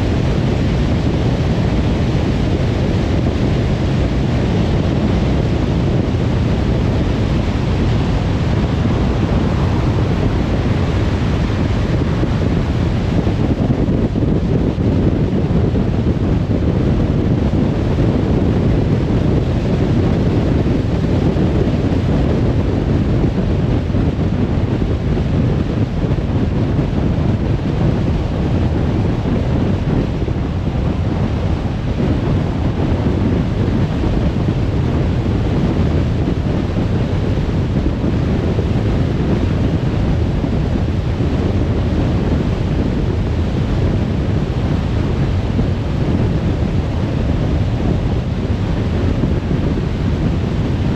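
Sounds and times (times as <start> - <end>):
car road and wind noise: 0.0 - 50.9.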